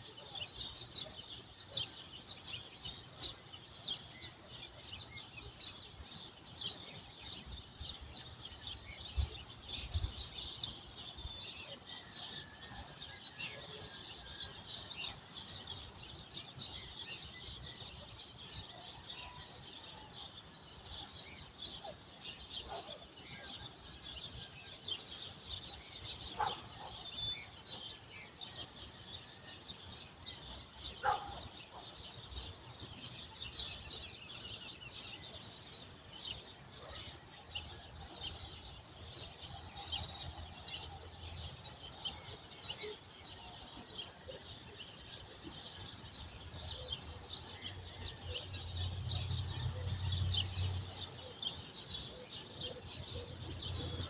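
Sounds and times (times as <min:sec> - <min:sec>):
small birds chirping: 0:13.6 - 0:54.0.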